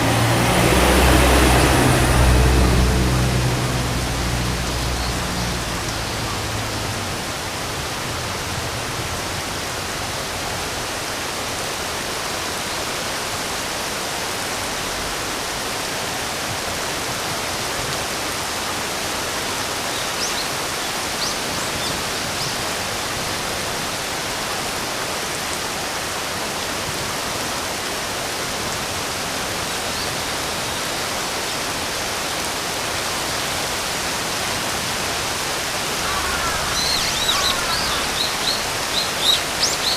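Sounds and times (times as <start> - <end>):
rain falling: 0.0 - 39.9
faint high bird chirps: 36.0 - 39.9.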